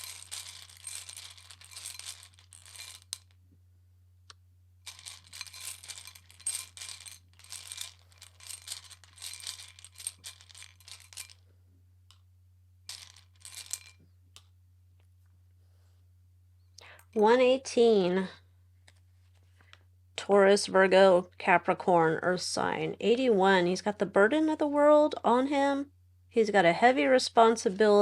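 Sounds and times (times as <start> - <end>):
small pieces rattling by hand: 0.0 - 3.4, 4.8 - 11.4, 12.9 - 14.5.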